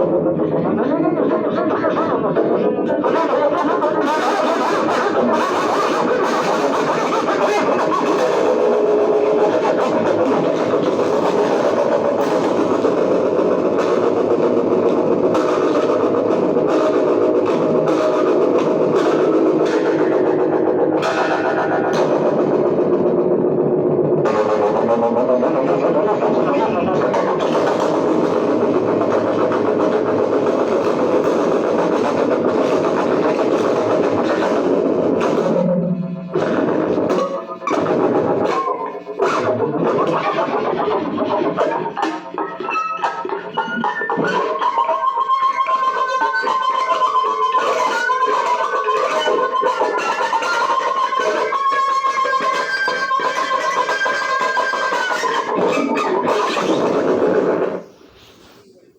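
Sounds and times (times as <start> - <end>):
guitar music with ringing notes: 4.5 - 57.0.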